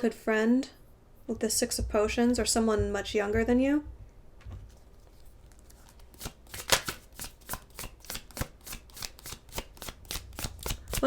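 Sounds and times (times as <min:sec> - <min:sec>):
cards being shuffled: 0:04.7 - 0:11.0.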